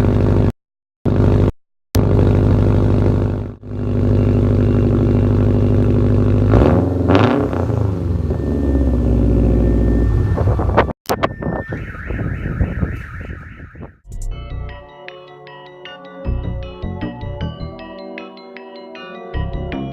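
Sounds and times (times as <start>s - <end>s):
engine throttle blip: 1.4s - 14.0s
car engine idling: 2.0s - 10.8s.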